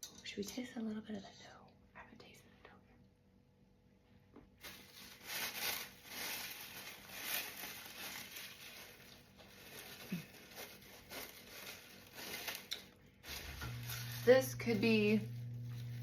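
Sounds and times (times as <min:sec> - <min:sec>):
crinkling and rustling: 0:04.6 - 0:16.0.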